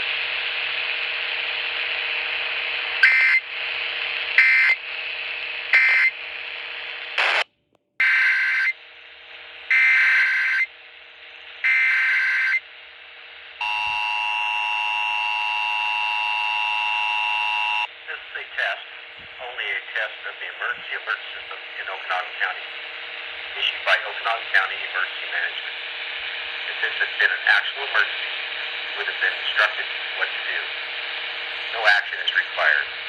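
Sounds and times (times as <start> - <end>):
radio hiss: 0.0 - 7.5, 8.4 - 33.0
two-tone attention signal: 13.6 - 17.9.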